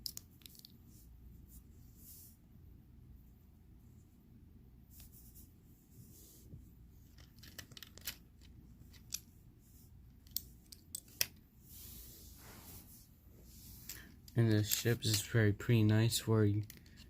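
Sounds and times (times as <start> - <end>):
plastic pieces clicking: 0.0 - 0.7, 7.1 - 9.2.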